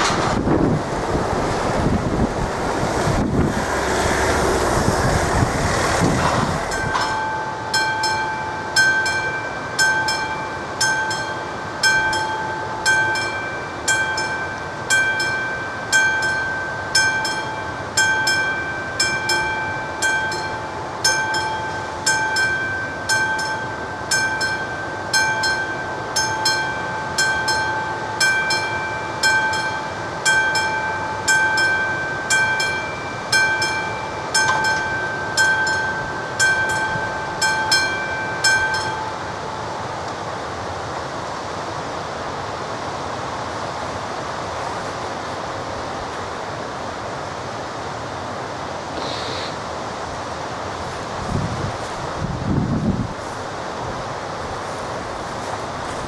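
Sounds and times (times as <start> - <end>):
loud rushing noise: 0.0 - 7.7
mechanical warning bell striking: 6.7 - 40.0.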